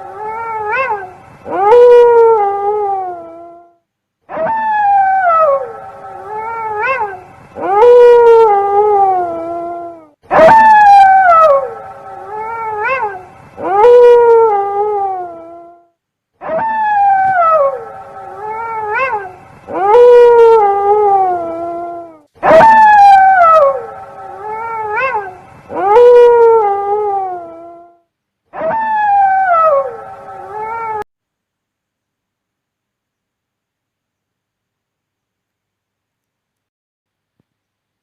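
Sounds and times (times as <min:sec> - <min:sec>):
wolf howling: 0:00.0 - 0:03.6, 0:04.3 - 0:15.8, 0:16.4 - 0:27.9, 0:28.5 - 0:31.1.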